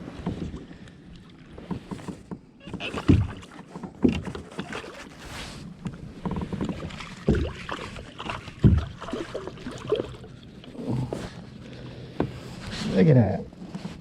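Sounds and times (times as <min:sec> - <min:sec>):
water and handling noise: 0:00.0 - 0:14.0
thumps against kayak hull: 0:01.5 - 0:04.8, 0:05.8 - 0:09.3.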